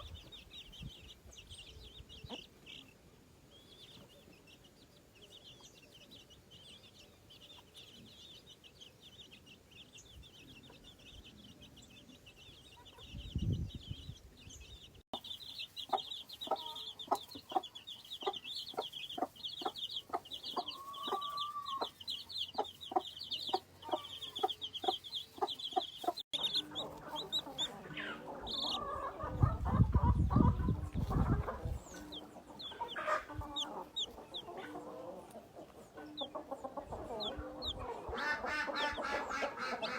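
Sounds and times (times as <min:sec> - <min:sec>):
chicks peeping: 0:00.0 - 0:39.9
hen clucking: 0:15.1 - 0:39.9.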